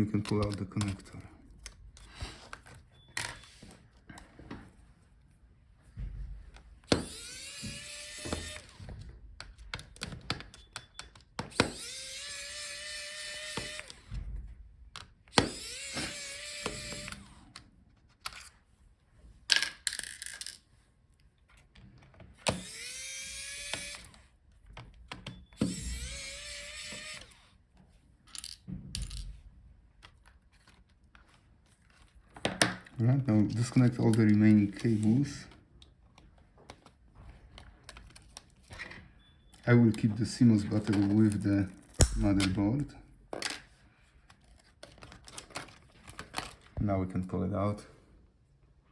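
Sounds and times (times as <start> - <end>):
electric screwdriver whining: 6.8 - 9.0, 11.4 - 14.1, 15.3 - 17.6, 22.4 - 24.4, 25.1 - 27.6.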